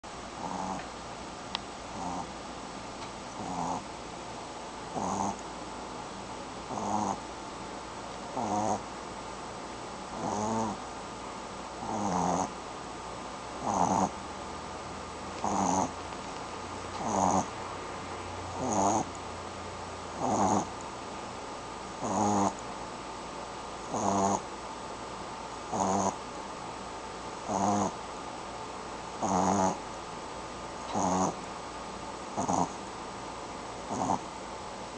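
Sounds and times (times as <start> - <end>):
pet snoring: 0.4 - 0.9, 1.9 - 2.4, 3.3 - 3.9, 4.9 - 5.4, 6.7 - 7.3, 8.3 - 8.9, 10.1 - 10.8, 11.8 - 12.6, 13.6 - 14.2, 15.4 - 17.6, 18.5 - 19.2, 20.2 - 20.8, 22.0 - 22.6, 23.9 - 24.5, 25.7 - 26.2, 27.4 - 28.0, 29.2 - 29.9, 30.8 - 31.4, 32.4 - 32.8, 33.9 - 34.3.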